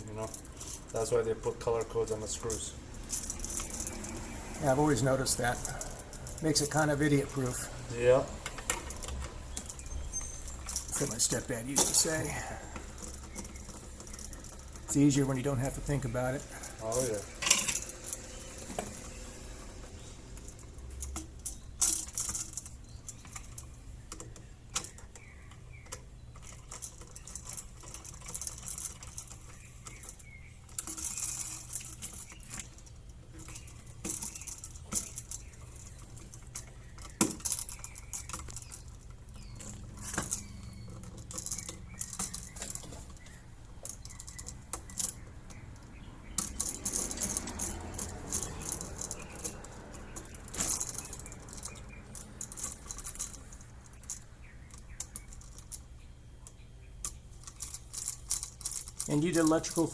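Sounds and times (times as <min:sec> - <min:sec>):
small clicks and metallic rattles: 0:00.0 - 0:59.9.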